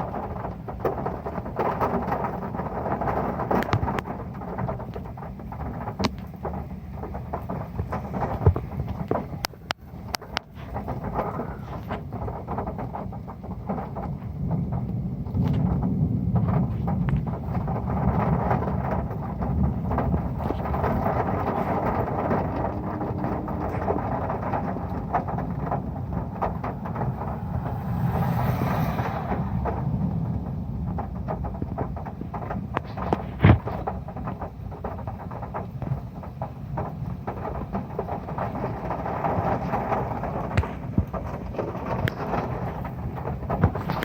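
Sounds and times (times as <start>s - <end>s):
heavy rain on a metal roof: 0.0s - 44.0s
low rumble: 18.8s - 34.8s
loud sharp hit: 26.1s - 31.9s.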